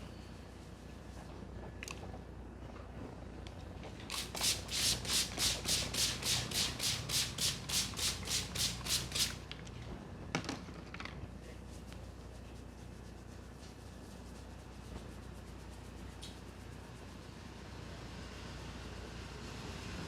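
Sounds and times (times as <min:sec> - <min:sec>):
hands rubbing over hair: 0:04.1 - 0:09.4.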